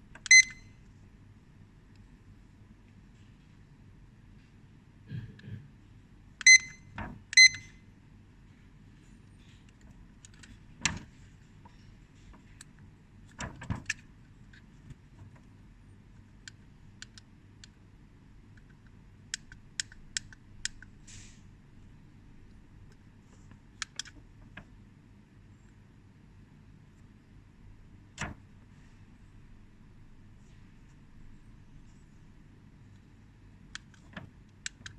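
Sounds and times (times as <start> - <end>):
timer buttons clicking: 0.2 - 0.6, 6.4 - 6.8, 7.4 - 7.7.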